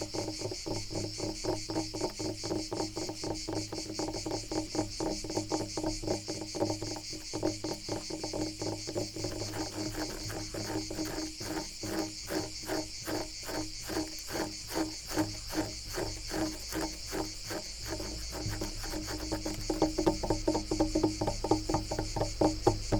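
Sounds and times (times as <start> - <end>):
insects chirring: 0.0 - 22.9
wood being scratched: 8.8 - 22.2.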